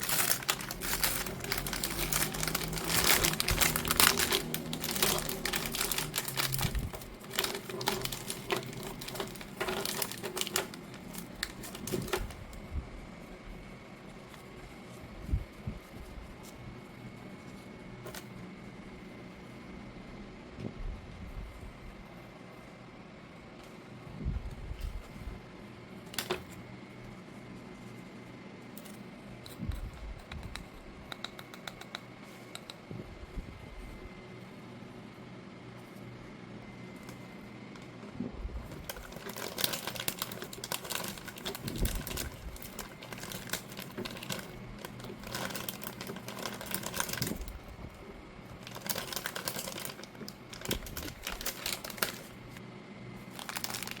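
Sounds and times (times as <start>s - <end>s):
wrapper crackling and crinkling: 0.0s - 12.6s, 18.0s - 18.3s, 38.6s - 47.8s, 48.4s - 52.6s, 53.2s - 54.0s.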